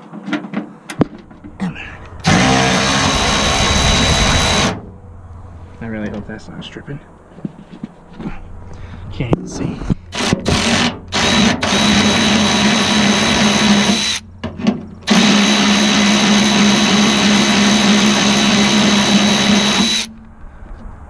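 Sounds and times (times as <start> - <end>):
electric drill running: 2.2 - 4.8, 10.1 - 14.2, 15.0 - 20.1.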